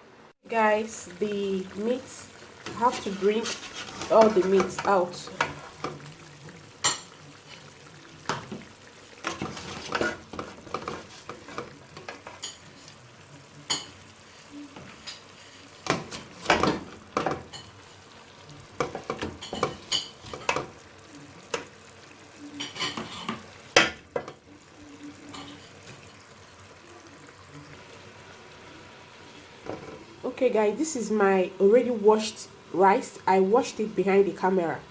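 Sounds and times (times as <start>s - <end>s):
faint sizzle: 0.0s - 34.9s
metal spoon scraping pot: 2.7s - 5.8s.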